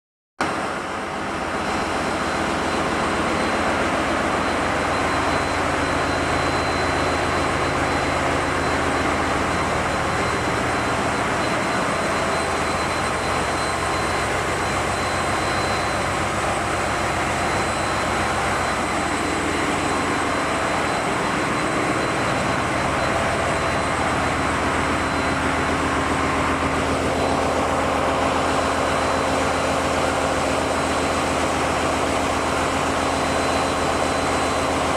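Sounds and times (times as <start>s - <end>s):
diesel generator engines running: 0.4s - 34.9s
thin high whine: 1.4s - 31.8s.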